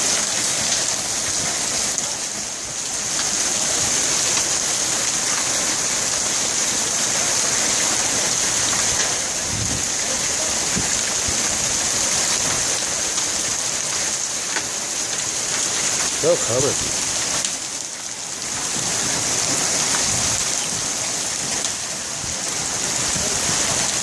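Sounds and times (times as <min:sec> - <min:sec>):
rain pouring down: 0:00.0 - 0:24.0
hailstones striking: 0:18.4 - 0:24.0.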